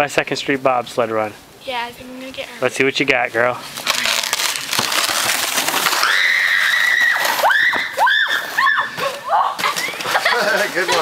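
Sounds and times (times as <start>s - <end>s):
sled sliding on snow: 3.7s - 11.0s
girl screaming: 6.0s - 9.6s.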